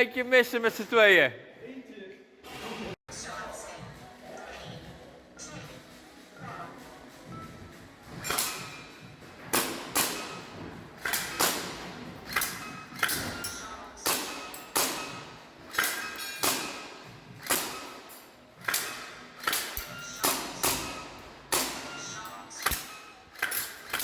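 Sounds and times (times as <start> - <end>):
airsoft gun shots: 9.5 - 13.4, 14.0 - 21.9.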